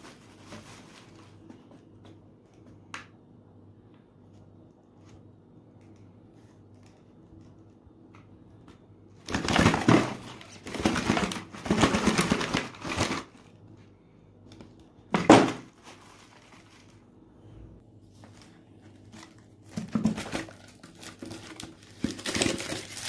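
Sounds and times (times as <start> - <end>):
low steady hum: 0.0 - 23.0
crunching and crumpling: 15.5 - 17.1, 18.1 - 23.0.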